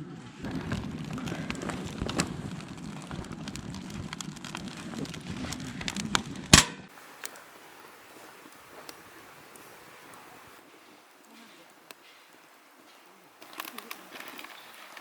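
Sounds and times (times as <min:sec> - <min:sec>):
firewood crackling and popping: 0:00.4 - 0:15.0
loud pop from fire: 0:00.5 - 0:07.0.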